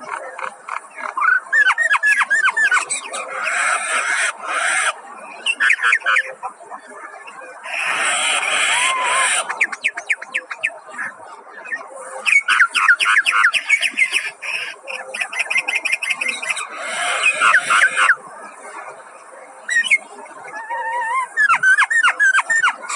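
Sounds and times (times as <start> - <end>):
myna birds squawking: 0.0 - 6.4, 7.6 - 11.1, 12.2 - 18.2.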